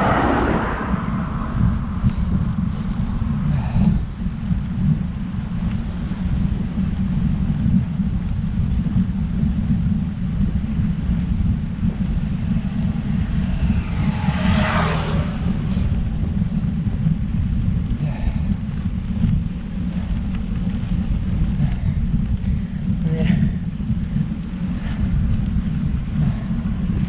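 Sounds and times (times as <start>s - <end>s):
vehicle passing: 0.0s - 4.0s, 10.3s - 17.6s
wind buffeting microphone: 0.0s - 27.0s.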